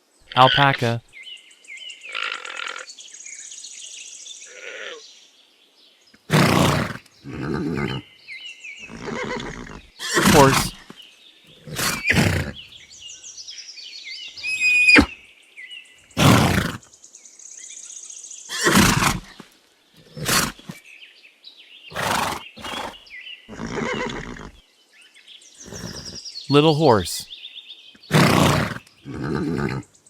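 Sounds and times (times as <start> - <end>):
faint birds chirping: 0.0 - 30.0
horse neighing: 6.3 - 8.0, 8.9 - 10.8, 11.6 - 12.6, 14.4 - 15.2, 16.2 - 16.8, 18.5 - 19.4, 20.1 - 20.8, 21.9 - 24.6, 25.6 - 26.2, 28.1 - 29.9.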